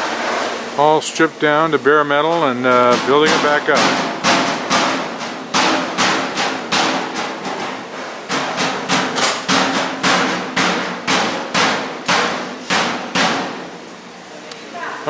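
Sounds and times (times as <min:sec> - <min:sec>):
hammer striking sheet metal: 0:02.2 - 0:13.8.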